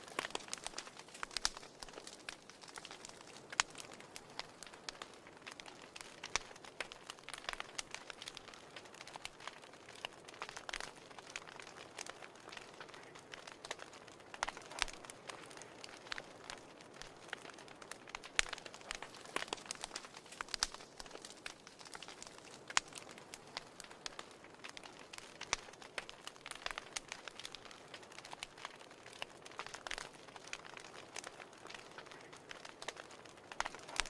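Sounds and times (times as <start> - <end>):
soft steady fire hiss: 0.0 - 34.0
wood fire crackling: 0.0 - 34.0.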